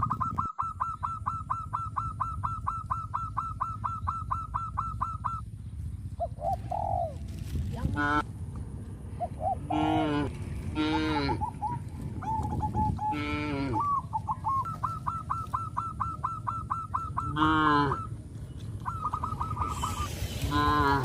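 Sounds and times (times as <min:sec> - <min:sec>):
fast high chirps: 0:00.0 - 0:06.2, 0:13.8 - 0:17.4
high falling animal calls: 0:09.2 - 0:21.0.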